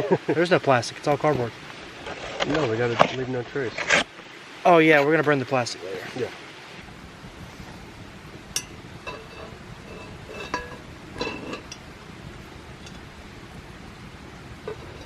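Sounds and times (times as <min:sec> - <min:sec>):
camp cookware clinking: 0:08.4 - 0:13.2, 0:14.4 - 0:15.0.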